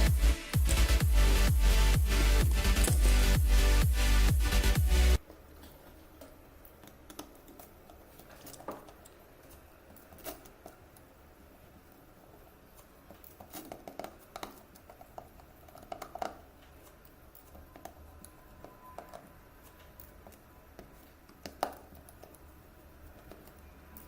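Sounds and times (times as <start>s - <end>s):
rustling of hands handling parts: 5.2s - 24.0s.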